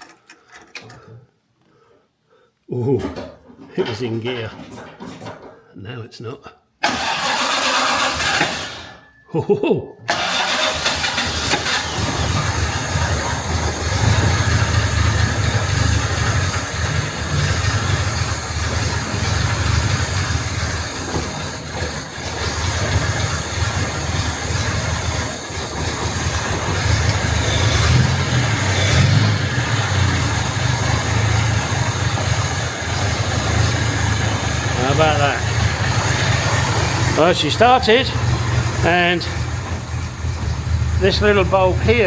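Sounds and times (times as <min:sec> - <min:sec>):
car engine running: 0:10.1 - 0:42.0.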